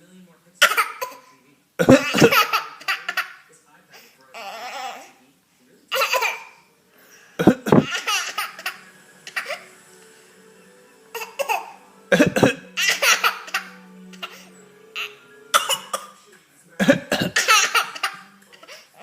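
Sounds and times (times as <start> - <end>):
fake coughs: 0.6 - 2.6, 7.4 - 7.9, 11.4 - 13.2, 15.5 - 16.2, 16.8 - 18.1
baby laughing: 0.6 - 3.5, 5.9 - 6.6, 7.4 - 9.7, 11.1 - 16.1, 16.8 - 19.0.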